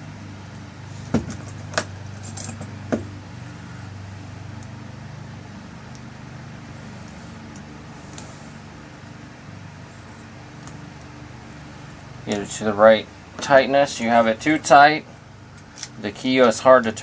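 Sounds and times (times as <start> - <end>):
low hum: 0.0 - 16.2
lock parts clicking and clinking: 1.3 - 2.8.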